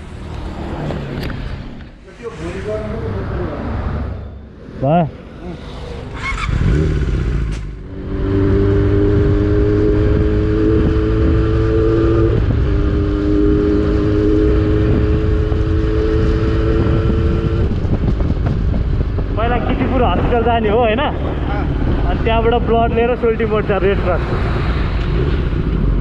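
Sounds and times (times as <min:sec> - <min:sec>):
wind rushing over microphone: 0:07.8 - 0:26.0.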